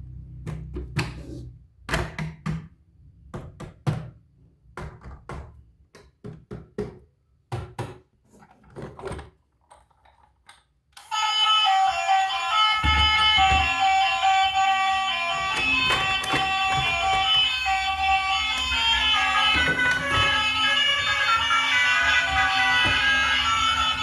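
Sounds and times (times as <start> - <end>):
music: 11.0 - 24.0.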